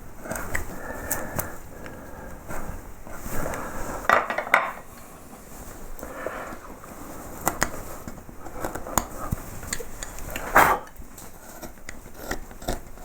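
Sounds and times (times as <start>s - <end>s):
chisel scraping wood: 11.4s - 13.0s.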